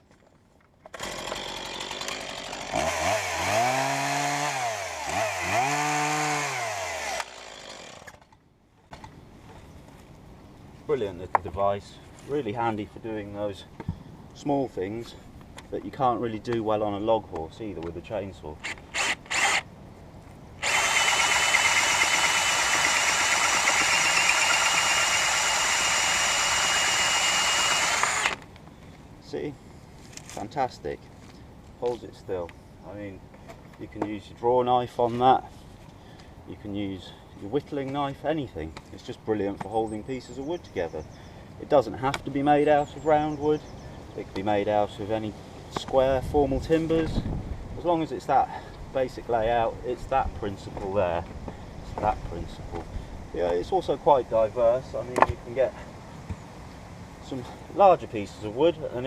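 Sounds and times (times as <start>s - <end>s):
power tool whining under load: 0.9s - 8.2s, 18.6s - 19.7s, 20.6s - 28.4s
chainsaw idling and cutting wood: 0.9s - 8.3s, 18.6s - 19.7s, 20.6s - 28.4s.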